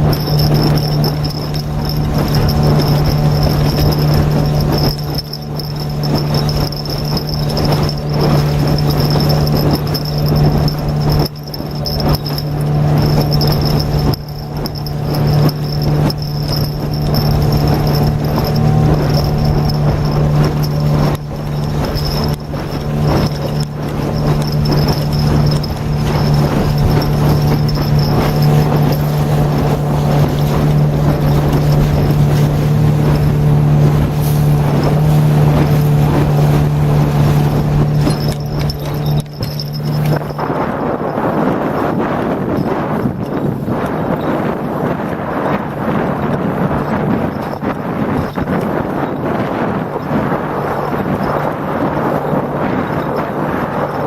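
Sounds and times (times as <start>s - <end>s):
boat outboard motor running: 0.0s - 54.0s
water noise: 0.0s - 54.0s.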